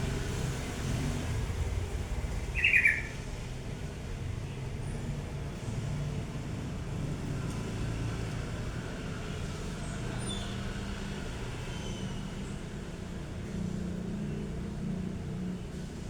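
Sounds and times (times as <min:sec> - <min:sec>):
bird high chirps: 0:02.5 - 0:03.2.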